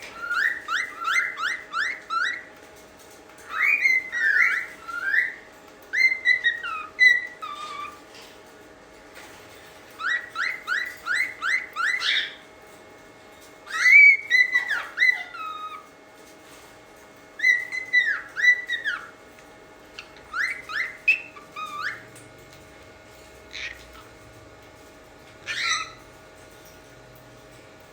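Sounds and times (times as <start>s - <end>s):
cockatiel whistling: 0.1s - 2.5s, 3.5s - 8.0s, 10.0s - 12.4s, 13.7s - 15.9s, 17.4s - 19.2s, 20.0s - 22.0s, 25.4s - 26.0s.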